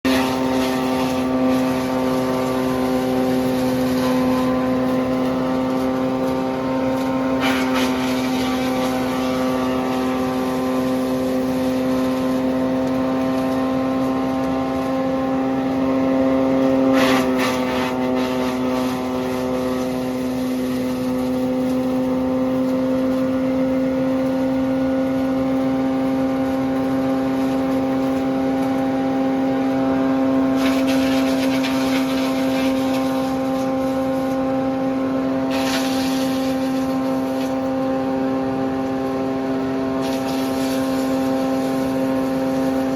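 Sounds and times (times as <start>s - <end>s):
wood chipper engine drone: 0.0s - 42.9s.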